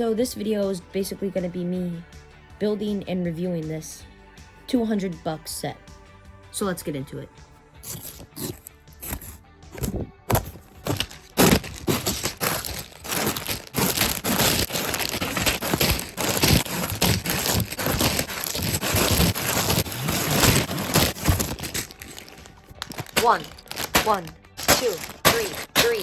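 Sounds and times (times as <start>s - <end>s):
cardboard and plastic bags crinkling: 7.8s - 26.0s.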